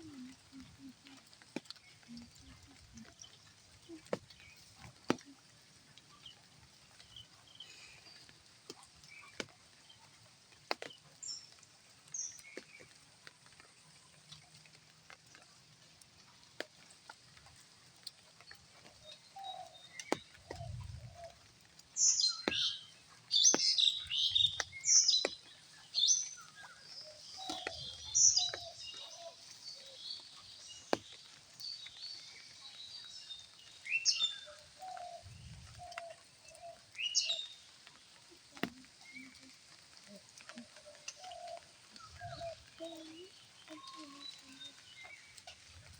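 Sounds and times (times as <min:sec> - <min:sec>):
birds chirping: 0:18.4 - 0:45.9.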